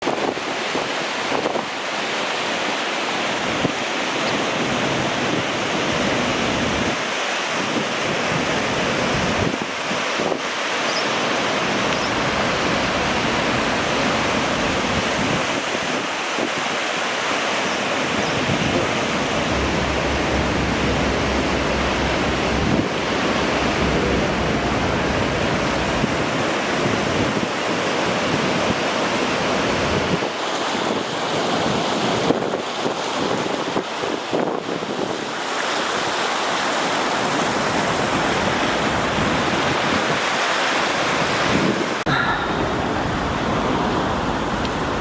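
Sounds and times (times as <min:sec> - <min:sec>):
flood water rushing: 0:00.0 - 0:45.0
wind buffeting microphone: 0:03.4 - 0:16.8, 0:17.6 - 0:35.4, 0:41.0 - 0:45.0.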